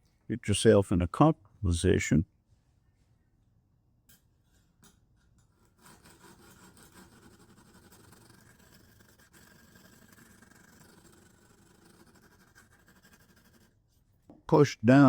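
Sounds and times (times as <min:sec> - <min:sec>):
hone rasping on knife edge: 0:04.5 - 0:13.7.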